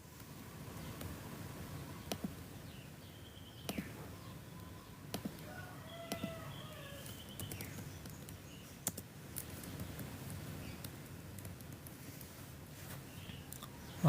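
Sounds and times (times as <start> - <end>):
faint chirp-like tones: 0.0 - 14.0
low steady background noise: 0.0 - 14.0
computer input clicks and taps: 2.0 - 2.4, 3.6 - 4.0, 6.1 - 6.4, 7.2 - 10.1.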